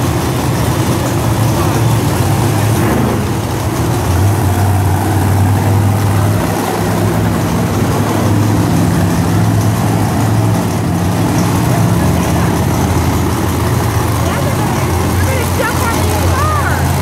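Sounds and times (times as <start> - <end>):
monster truck engines idling: 0.0 - 17.0.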